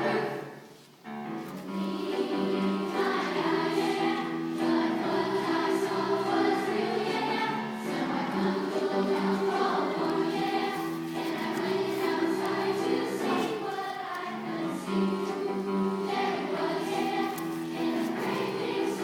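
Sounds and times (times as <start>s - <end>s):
choir singing: 0.0s - 0.8s, 1.4s - 19.0s.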